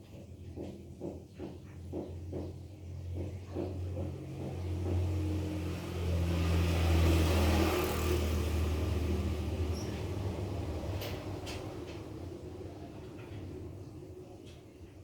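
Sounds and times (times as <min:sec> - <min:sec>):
vehicle engine rumbling past: 0:04.0 - 0:14.2.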